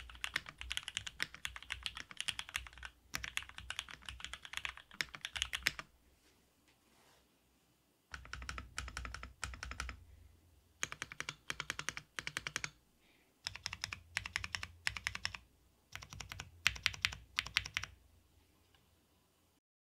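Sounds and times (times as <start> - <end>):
mechanical keyboard typing: 0.0 - 5.9, 8.1 - 10.0, 10.8 - 12.8, 13.4 - 18.0.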